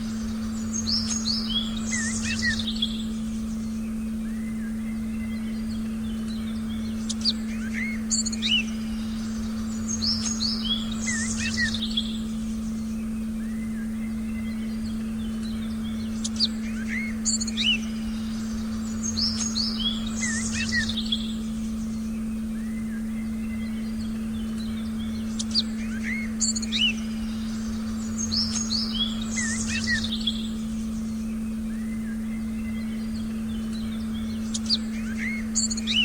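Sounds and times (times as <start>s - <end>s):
birds chirping and whistling: 0.0s - 36.0s
low synthesized drone: 0.0s - 36.0s.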